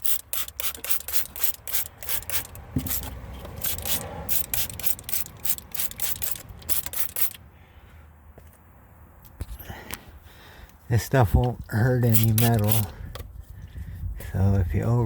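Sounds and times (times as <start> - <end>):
spray bottle hissing: 0.0 - 7.4.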